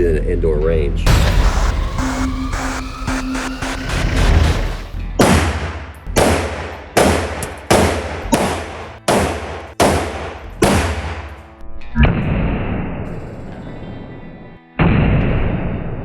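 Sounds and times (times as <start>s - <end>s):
pistol shots echoing: 5.2s - 11.3s.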